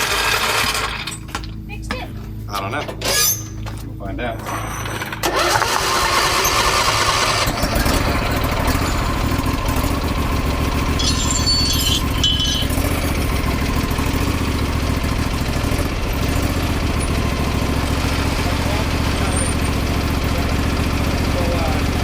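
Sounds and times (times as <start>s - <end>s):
lawn tractor engine running: 0.0s - 1.7s, 2.3s - 22.0s.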